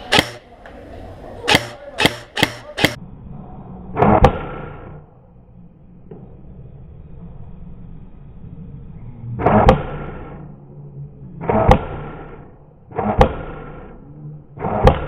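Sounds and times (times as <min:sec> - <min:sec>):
airsoft rifle shots: 0:00.0 - 0:00.5, 0:01.5 - 0:03.0
burst of airsoft fire: 0:01.5 - 0:03.0.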